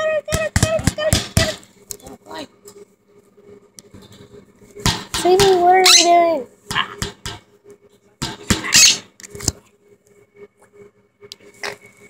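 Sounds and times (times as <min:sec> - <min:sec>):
parrot squawking: 0:05.8 - 0:07.0, 0:08.5 - 0:09.1.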